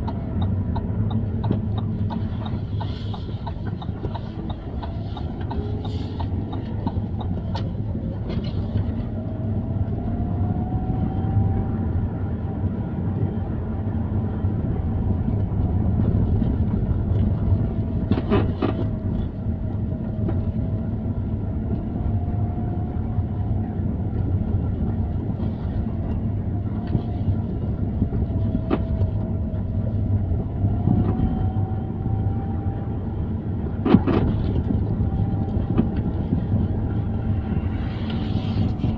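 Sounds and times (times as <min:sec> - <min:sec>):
road and engine rumble: 0:00.0 - 0:38.9
faint rising and falling tone: 0:36.8 - 0:38.9.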